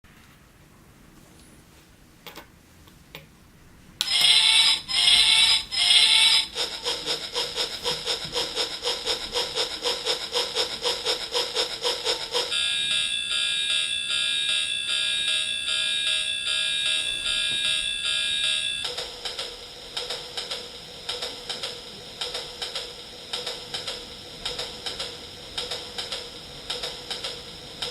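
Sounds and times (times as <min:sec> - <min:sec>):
fast electronic pulsing: 0:04.4 - 0:12.6
bell-like ringing: 0:12.5 - 0:19.0.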